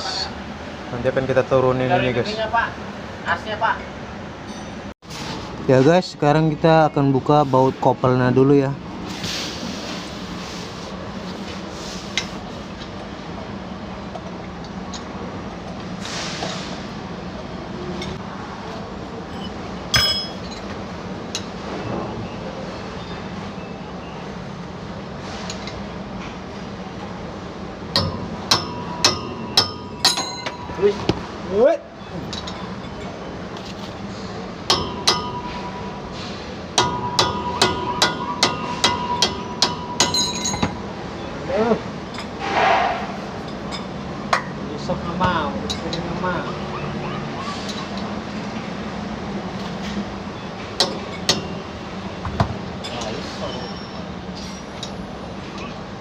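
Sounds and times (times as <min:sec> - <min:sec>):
hammer striking steel: 0:19.9 - 0:20.5, 0:27.9 - 0:31.0, 0:34.7 - 0:36.1, 0:36.7 - 0:40.8, 0:50.8 - 0:51.7
brief rush of noise: 0:42.4 - 0:43.3.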